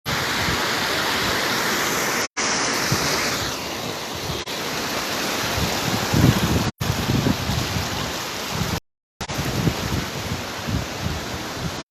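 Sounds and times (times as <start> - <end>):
waterfall rushing: 0.1 - 11.8
wind buffeting microphone: 5.4 - 11.8.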